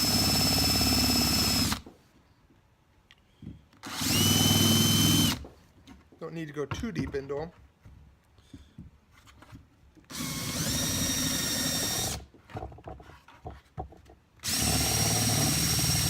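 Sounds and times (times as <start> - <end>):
electric drill whining: 0.0 - 1.9, 3.8 - 5.5, 10.1 - 12.3, 14.4 - 16.0.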